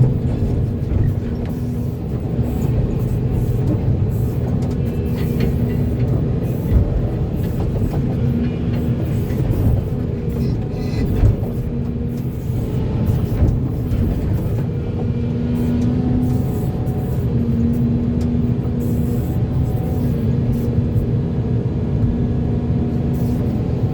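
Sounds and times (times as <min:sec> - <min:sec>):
excavator diesel engine running: 0:00.0 - 0:23.9.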